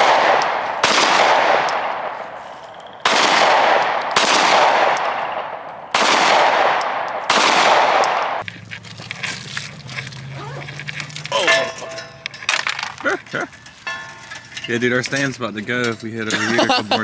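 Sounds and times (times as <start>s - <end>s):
echoing gunshots: 0.0s - 8.4s.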